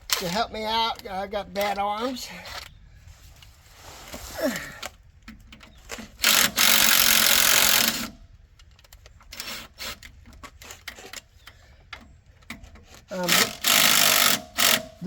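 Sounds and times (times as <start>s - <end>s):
impact driver hammering: 13.3s - 15.0s.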